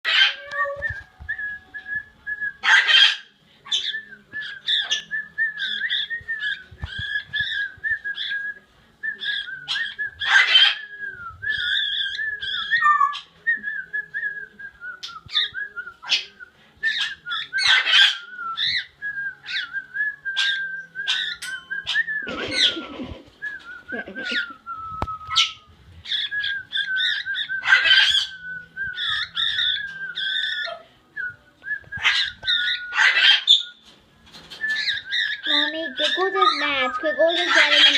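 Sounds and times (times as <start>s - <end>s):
cockatiel whistling: 15.0s - 22.8s, 23.5s - 33.8s, 34.6s - 37.9s.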